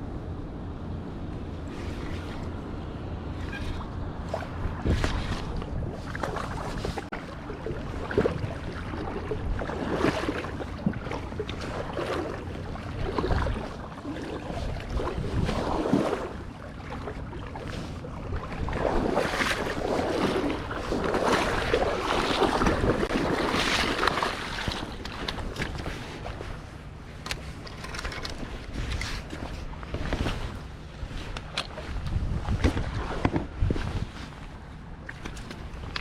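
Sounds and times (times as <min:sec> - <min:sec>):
wind buffeting microphone: 0:00.0 - 0:27.3, 0:27.9 - 0:36.0
rushing water: 0:03.3 - 0:26.6.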